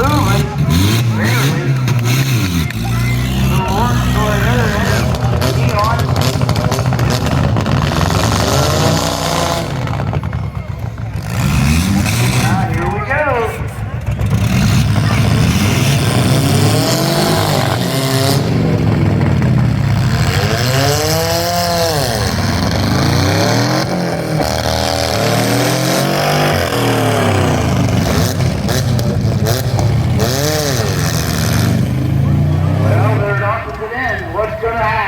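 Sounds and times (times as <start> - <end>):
car engines revving: 0.0 - 35.0.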